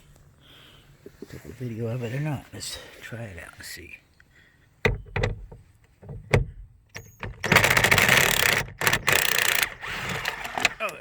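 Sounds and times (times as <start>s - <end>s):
handling knocks: 4.8s - 9.0s
impact driver whining and hammering: 4.9s - 10.8s.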